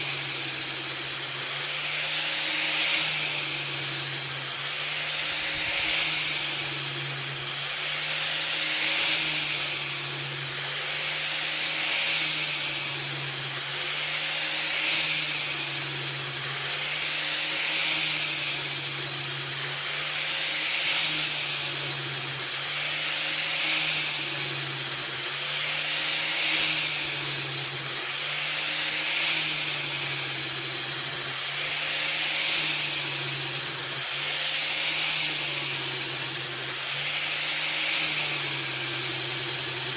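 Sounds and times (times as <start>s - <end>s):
angle grinder grinding steel: 0.0s - 39.9s.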